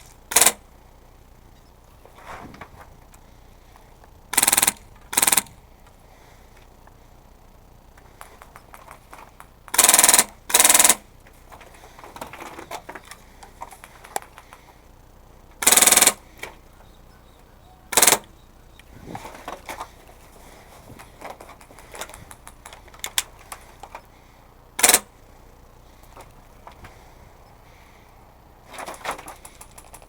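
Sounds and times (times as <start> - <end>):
airsoft gun full-auto bursts: 0.3 - 0.6, 4.3 - 5.6, 9.7 - 11.1, 15.6 - 16.2, 17.9 - 18.3, 24.8 - 25.1.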